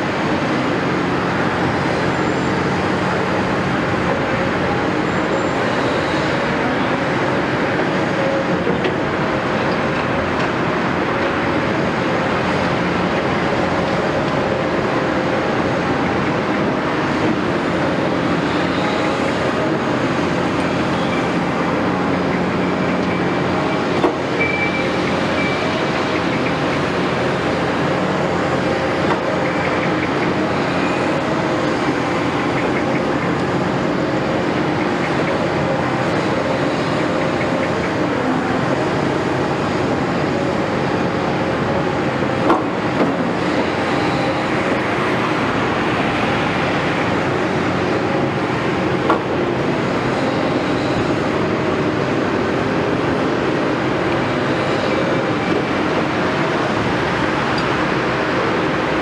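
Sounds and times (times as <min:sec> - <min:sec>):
excavator diesel engine running: 0:00.0 - 0:59.0.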